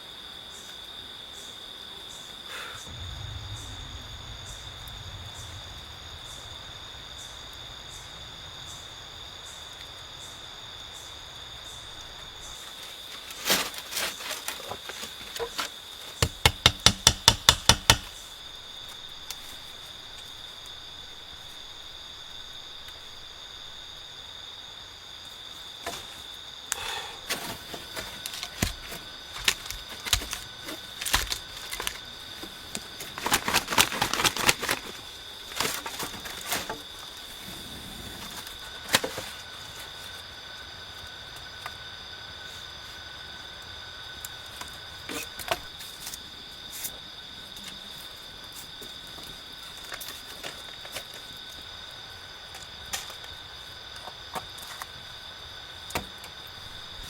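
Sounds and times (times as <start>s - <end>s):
crickets trilling: 0.0s - 57.0s
sharp knocks: 16.2s - 18.1s.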